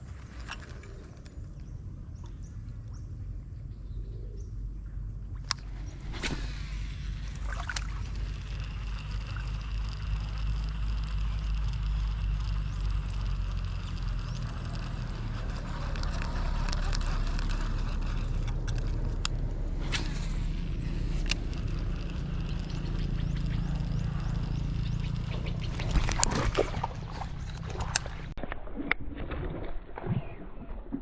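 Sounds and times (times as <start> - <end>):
low rumble: 0.0 - 31.0
water sloshing and splashing: 5.5 - 10.0, 25.3 - 31.0.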